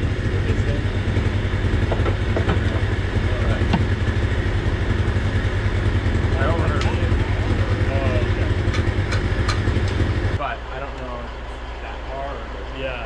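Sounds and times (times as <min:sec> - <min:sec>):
engine running steadily: 0:00.0 - 0:13.0.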